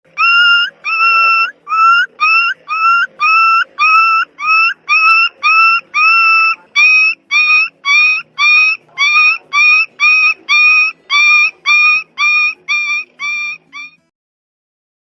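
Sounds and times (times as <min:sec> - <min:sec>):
puppies whimpering: 0:00.1 - 0:14.0.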